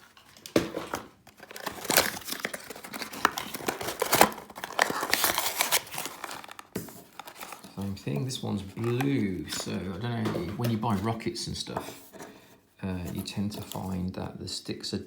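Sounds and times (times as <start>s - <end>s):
wrapping crinkling and tearing: 1.2s - 9.8s.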